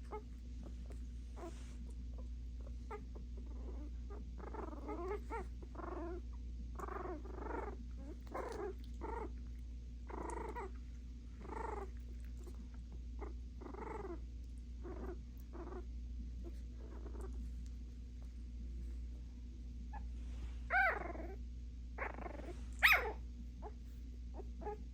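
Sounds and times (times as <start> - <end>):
steady low hum: 0.0 - 24.9
puppies yipping: 22.8 - 23.2.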